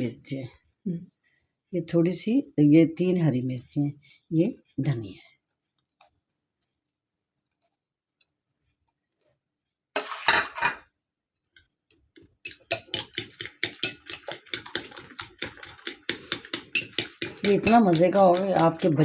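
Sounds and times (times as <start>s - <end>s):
utensil beating eggs in bowl: 12.1s - 19.0s.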